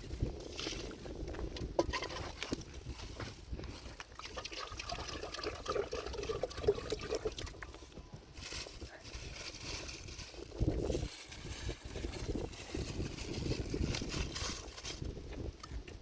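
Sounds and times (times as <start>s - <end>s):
water pouring and trickling: 4.1s - 7.9s
water splashing and gurgling: 4.2s - 7.6s.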